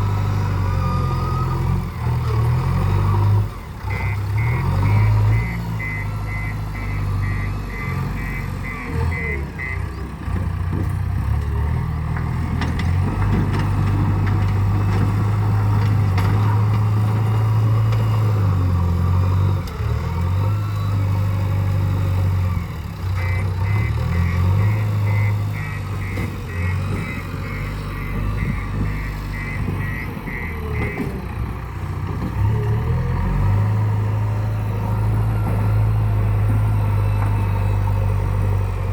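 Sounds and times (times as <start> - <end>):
diesel engine running: 0.0 - 38.9
reversing alarm beeping: 3.9 - 9.9, 23.2 - 31.1.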